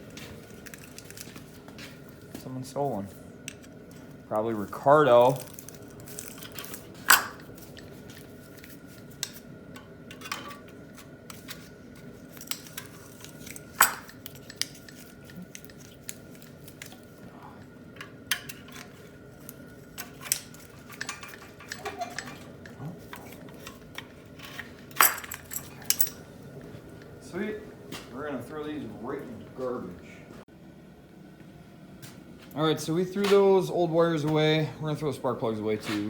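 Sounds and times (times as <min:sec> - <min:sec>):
faint high hum: 0:00.0 - 0:36.0
metallic tool clicks and clinks: 0:12.4 - 0:15.8, 0:24.9 - 0:26.3.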